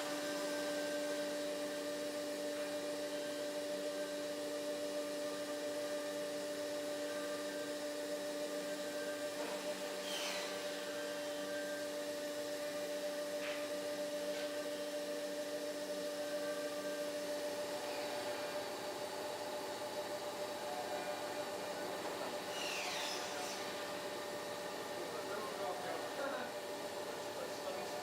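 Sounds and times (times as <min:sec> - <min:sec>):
motor humming: 0:14.5 - 0:28.0.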